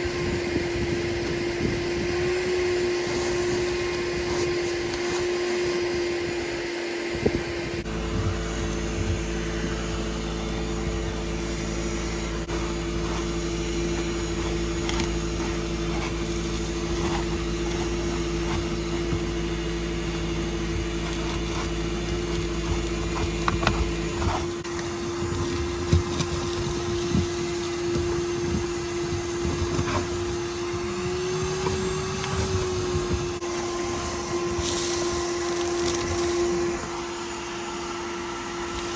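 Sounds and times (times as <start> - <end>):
vacuum cleaner whining: 0.0 - 38.9
low hum: 7.2 - 37.1.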